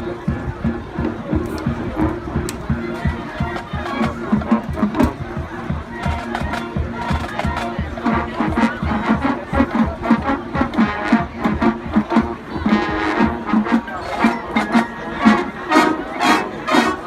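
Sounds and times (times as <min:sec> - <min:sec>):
steady drum beat: 0:00.0 - 0:17.0
brass sustaining chords: 0:07.6 - 0:17.0.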